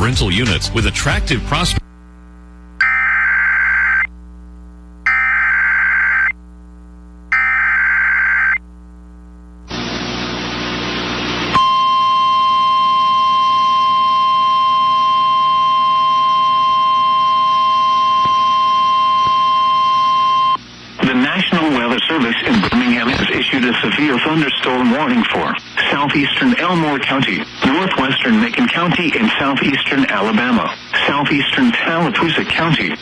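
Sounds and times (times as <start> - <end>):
steady high alarm tone: 5.1 - 6.3, 7.3 - 8.6, 11.6 - 20.6
warbling digital data bursts: 5.1 - 6.4, 7.3 - 8.6
static hiss: 8.8 - 11.6.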